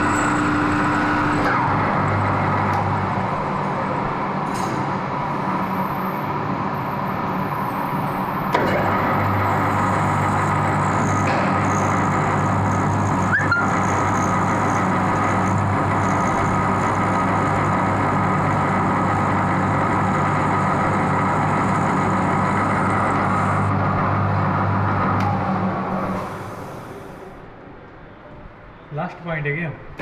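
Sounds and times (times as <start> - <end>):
lathe motor hum: 0.0 - 4.4, 8.8 - 27.3
short rising squeal: 13.2 - 13.9.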